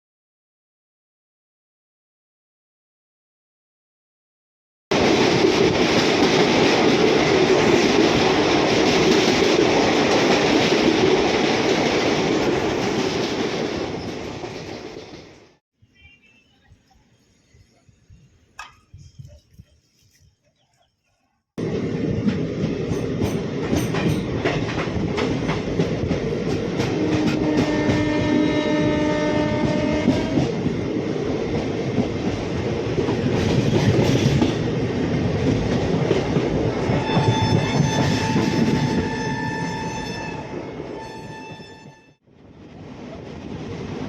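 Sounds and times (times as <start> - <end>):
train wheels clattering: 5.0 - 15.5, 22.2 - 28.8, 29.4 - 40.1
train horn: 26.8 - 30.6, 36.9 - 42.2.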